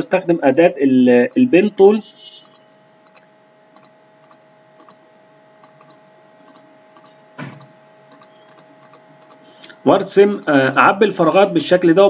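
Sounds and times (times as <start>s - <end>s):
faint electrical hum: 0.0s - 12.0s
computer mouse clicks: 2.4s - 5.0s, 5.6s - 9.4s, 10.2s - 12.0s.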